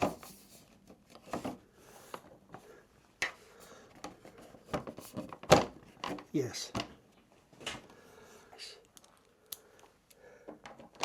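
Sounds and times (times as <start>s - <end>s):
plastic panels clicking and knocking: 3.2s - 7.0s, 10.5s - 11.0s.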